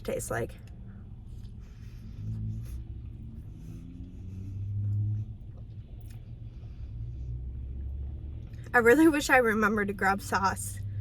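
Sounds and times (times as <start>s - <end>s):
low rumble inside car: 0.0s - 11.0s.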